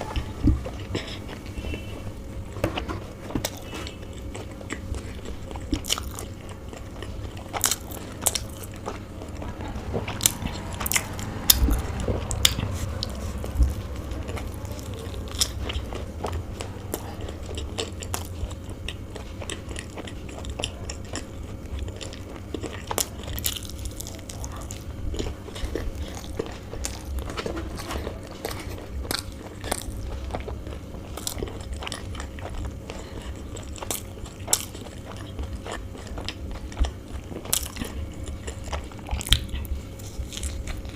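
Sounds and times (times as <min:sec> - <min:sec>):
chewing and biting food: 0:00.0 - 0:40.9.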